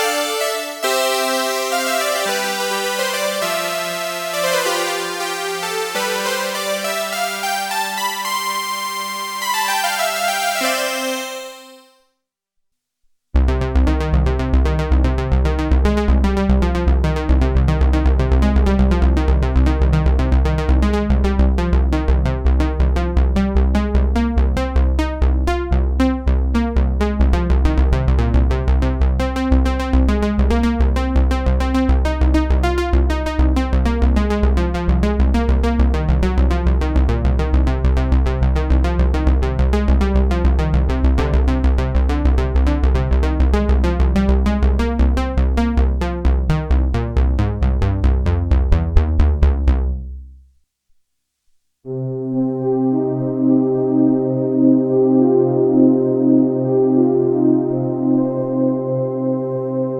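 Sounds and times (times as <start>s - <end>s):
synthesizer note run: 0.0s - 12.0s
deep synth bass: 13.4s - 50.5s, 51.9s - 59.9s.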